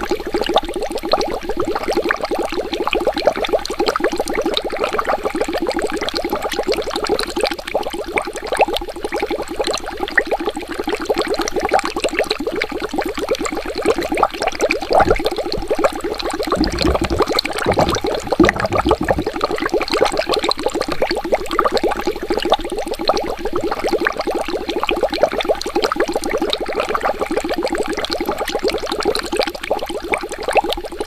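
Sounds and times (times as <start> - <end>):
water bubbling: 14.6 - 19.8.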